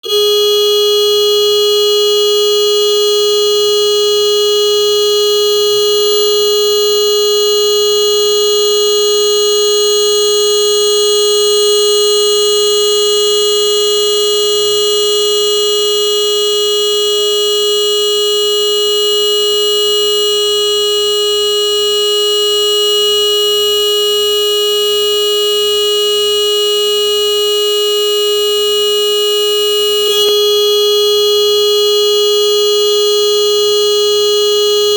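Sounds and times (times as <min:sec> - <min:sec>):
motorcycle horn blast: 0:00.0 - 0:02.2, 0:29.0 - 0:34.9.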